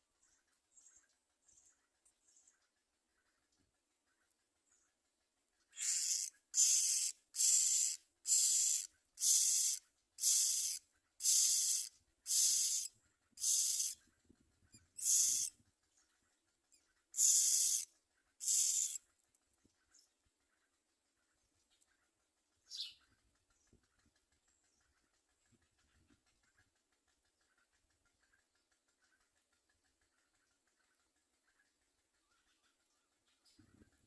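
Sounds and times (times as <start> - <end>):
nestlings' hissing begging calls: 5.8 - 14.0, 15.0 - 15.5, 17.2 - 17.8, 18.4 - 19.0.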